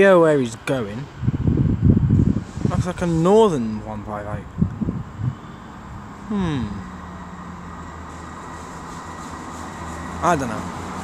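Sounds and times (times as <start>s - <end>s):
diesel train humming: 0.0s - 11.0s
short falling vocal sound: 6.3s - 6.8s.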